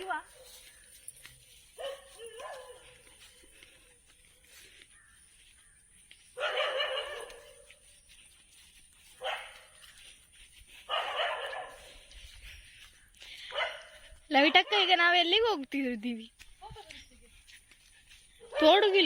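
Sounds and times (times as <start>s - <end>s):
dog barking: 1.8s - 3.1s, 6.4s - 7.7s, 9.2s - 9.8s, 10.9s - 12.0s, 13.5s - 14.9s.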